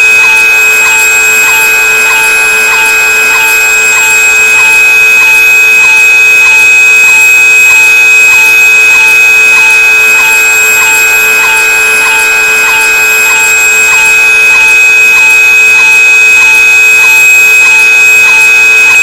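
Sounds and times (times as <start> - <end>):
regular ticking: 0.0 - 6.0, 9.0 - 14.7
blower motor whine: 0.0 - 6.6, 7.2 - 19.0.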